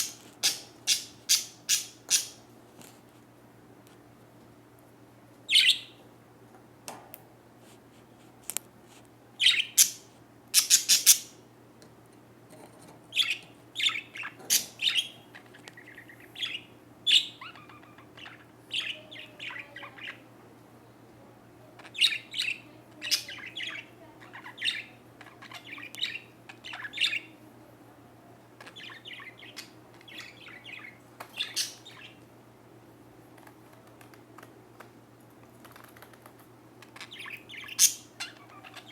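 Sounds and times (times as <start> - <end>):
small bird chirping: 0.0 - 2.4, 5.5 - 6.0, 9.4 - 11.4, 13.1 - 20.3, 21.8 - 27.4, 28.6 - 32.2, 37.0 - 38.9.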